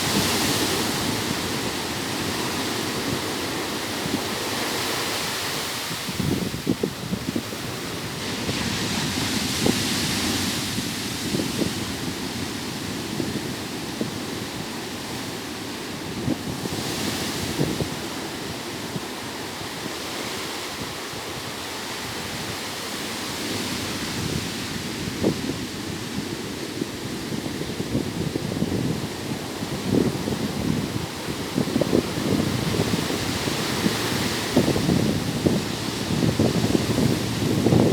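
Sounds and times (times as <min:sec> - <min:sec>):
wind buffeting microphone: 0:00.0 - 0:20.0, 0:23.4 - 0:37.9
ocean surf on a beach: 0:00.0 - 0:37.9.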